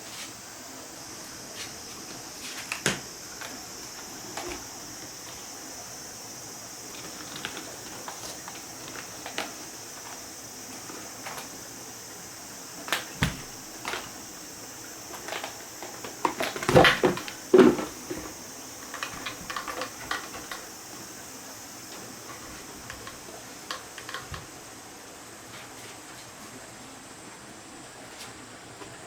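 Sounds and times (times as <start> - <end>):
steady high hiss: 0.0 - 29.0
small hard parts clicking: 15.0 - 20.8, 22.2 - 24.5.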